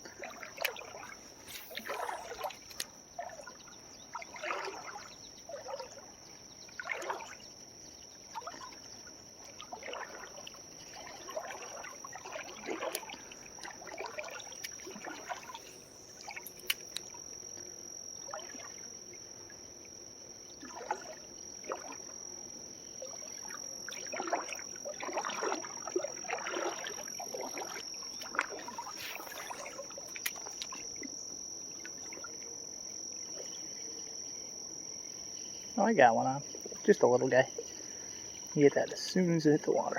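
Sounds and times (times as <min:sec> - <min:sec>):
creek trickling and splashing: 0:00.0 - 0:17.3, 0:18.2 - 0:18.9, 0:20.6 - 0:22.2, 0:23.0 - 0:32.4
insects droning: 0:00.0 - 0:39.9.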